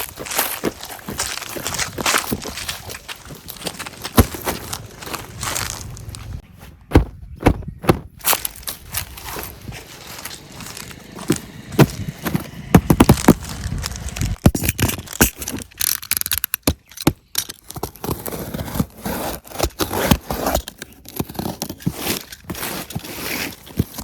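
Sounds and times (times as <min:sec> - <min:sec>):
packaging scraping and scratching: 0:00.0 - 0:06.4, 0:08.2 - 0:24.0
sharp clicks and knocks: 0:10.2 - 0:18.0.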